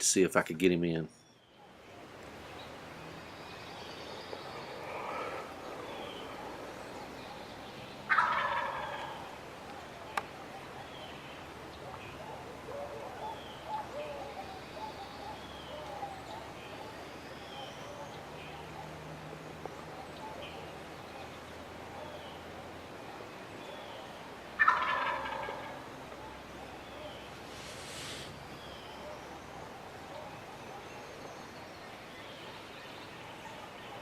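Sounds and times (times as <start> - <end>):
distant turkey gobbling: 4.4 - 19.1, 23.0 - 31.0.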